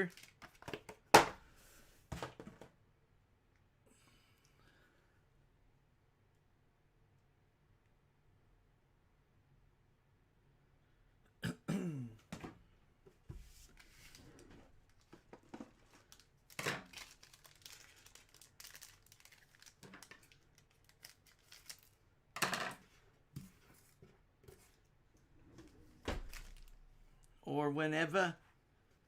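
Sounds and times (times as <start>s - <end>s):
plastic wrapping crinkling and tearing: 0.0s - 0.7s, 13.8s - 22.0s, 26.2s - 26.8s.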